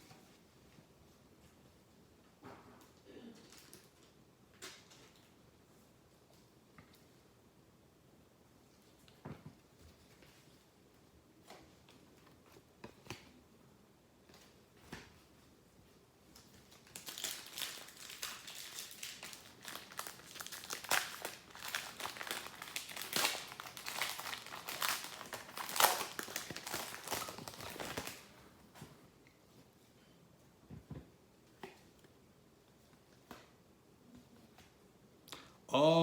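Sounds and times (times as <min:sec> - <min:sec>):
foil wrapper crinkling: 0:16.4 - 0:28.4.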